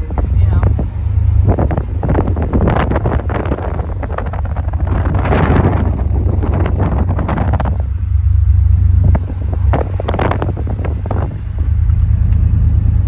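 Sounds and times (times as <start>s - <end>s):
steady low rumble: 0.0s - 13.0s
wind buffeting microphone: 0.0s - 13.0s.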